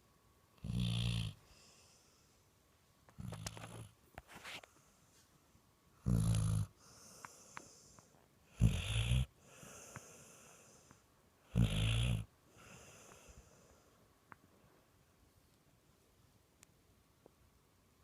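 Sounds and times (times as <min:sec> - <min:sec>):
dog snoring: 0:00.6 - 0:01.9, 0:03.2 - 0:04.0, 0:06.0 - 0:13.3.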